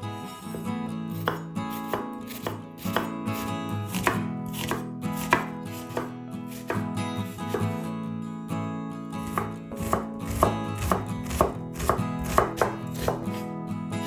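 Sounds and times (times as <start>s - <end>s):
acoustic guitar music: 0.0s - 14.0s
knife chopping on cutting board: 1.2s - 6.9s, 7.5s - 7.7s, 9.2s - 13.4s.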